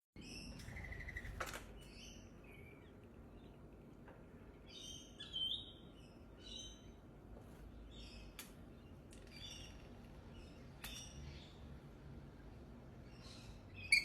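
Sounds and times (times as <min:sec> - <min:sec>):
parrot chirping and chattering: 0:13.2 - 0:14.0.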